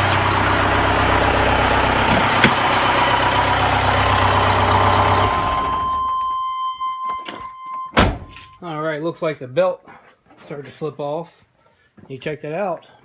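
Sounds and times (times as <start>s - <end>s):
diesel engine running: 0.0s - 6.2s.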